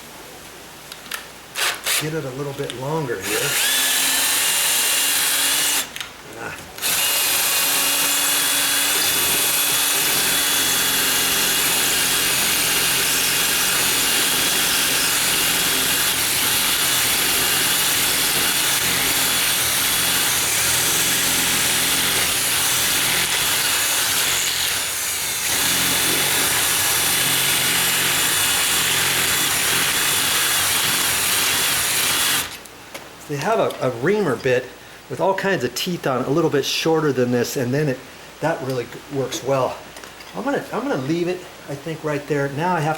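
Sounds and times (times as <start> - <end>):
electric drill whining: 1.6 - 2.1, 3.2 - 6.0, 6.8 - 32.6
drill bit scraping metal: 1.6 - 2.2, 3.2 - 5.9, 6.8 - 32.6.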